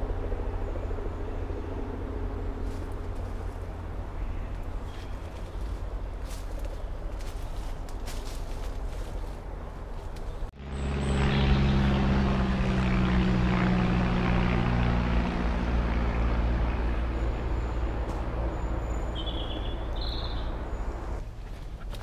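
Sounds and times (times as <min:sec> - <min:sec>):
light aircraft engine drone: 0:00.0 - 0:22.0
bird chirping: 0:17.2 - 0:21.2.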